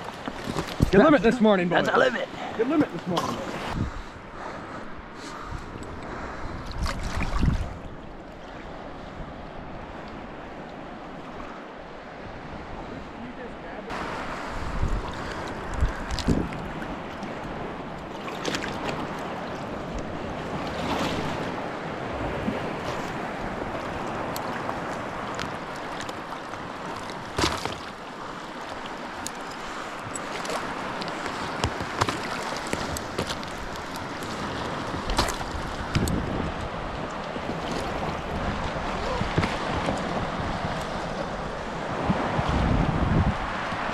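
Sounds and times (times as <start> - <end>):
lake waves washing on shore: 0.0 - 43.9
wind on microphone: 3.5 - 13.3, 13.9 - 18.0, 30.0 - 43.9.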